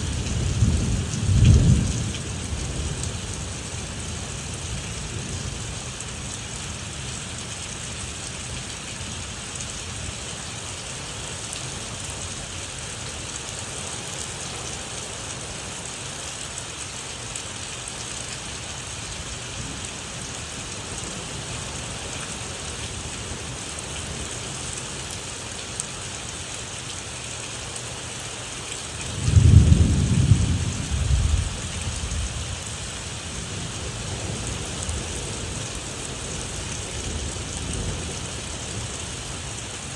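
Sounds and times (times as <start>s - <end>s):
thunder rumbling: 0.0s - 5.6s, 29.0s - 39.4s
steady rain: 0.0s - 39.9s.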